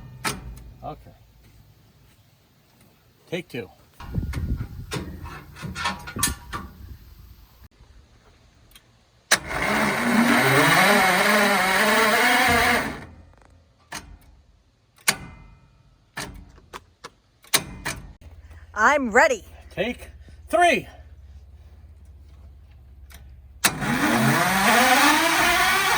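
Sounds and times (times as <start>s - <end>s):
engine cranking without starting: 9.3s - 13.5s, 21.0s - 25.9s.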